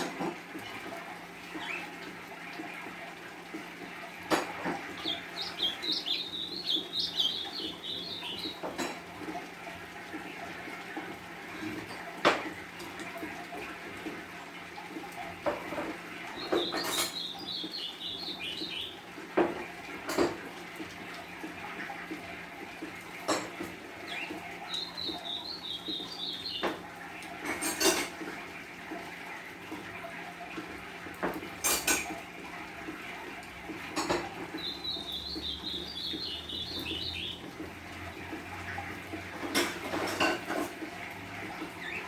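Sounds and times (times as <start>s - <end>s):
songbird twittering: 5.0s - 8.7s, 16.4s - 19.0s, 24.1s - 26.6s, 34.5s - 37.4s.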